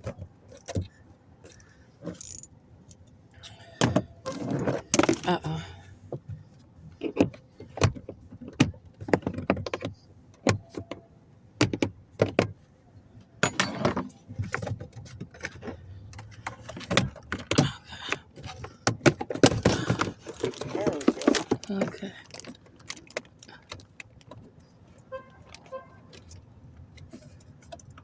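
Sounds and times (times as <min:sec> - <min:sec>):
hand tools clicking and rattling: 0:01.5 - 0:03.6, 0:13.4 - 0:24.5.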